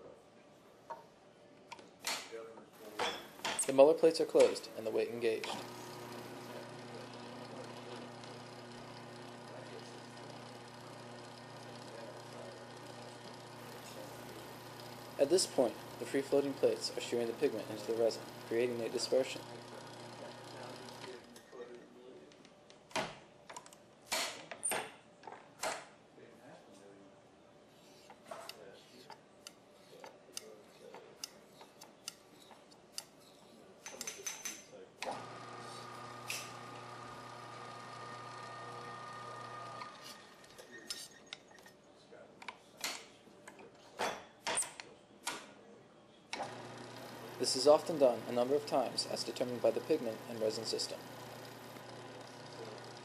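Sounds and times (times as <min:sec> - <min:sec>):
tools clinking and scraping on glass: 0:03.0 - 0:03.7, 0:40.1 - 0:41.8
motor humming: 0:04.6 - 0:21.3, 0:35.0 - 0:40.5, 0:46.4 - 0:53.0.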